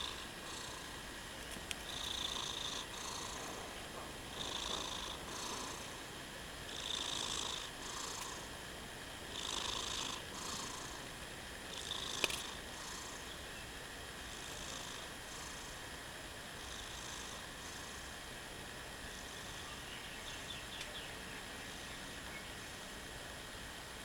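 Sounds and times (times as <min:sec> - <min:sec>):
cat snoring: 0:00.0 - 0:01.1, 0:01.8 - 0:06.1, 0:06.7 - 0:08.5, 0:09.3 - 0:13.4, 0:14.2 - 0:15.9, 0:16.6 - 0:18.2, 0:19.1 - 0:19.7.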